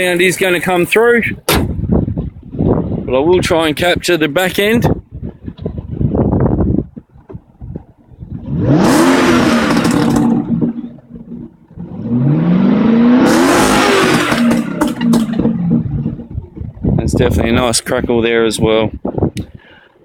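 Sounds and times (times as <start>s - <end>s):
exhaust crackles: 8.2s - 16.9s
car engine revving: 8.3s - 16.5s.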